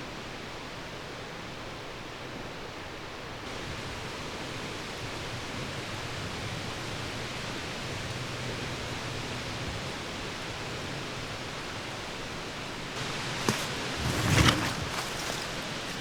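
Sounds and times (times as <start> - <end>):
outdoor background hiss: 2.0 - 12.0.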